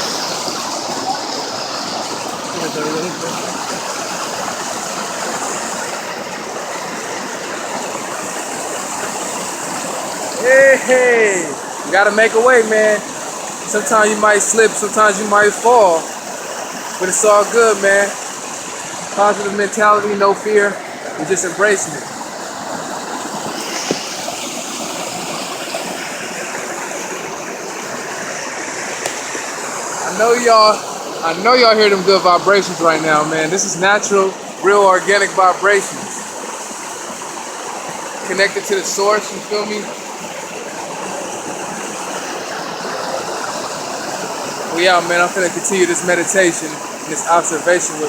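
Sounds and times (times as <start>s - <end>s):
stream water rushing: 0.0s - 48.0s
brief tap: 23.8s - 24.1s.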